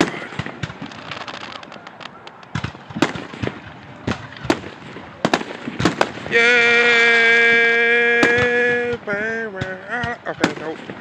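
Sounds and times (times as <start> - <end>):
crackling hiss: 0.0 - 11.0
fireworks bangs: 0.0 - 11.0.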